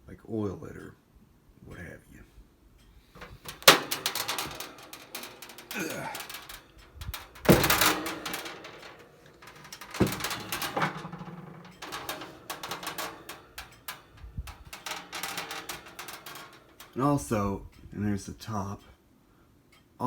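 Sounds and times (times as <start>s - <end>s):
metal fan cabinet clattering: 3.2s - 17.7s.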